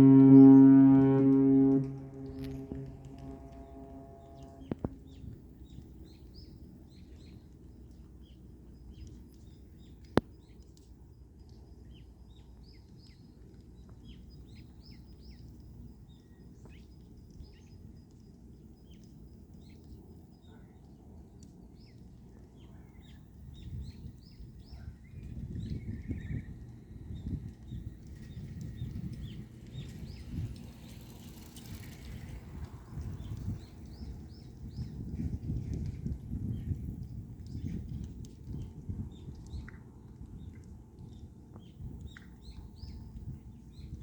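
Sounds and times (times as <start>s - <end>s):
steady low rumble: 0.0s - 6.9s.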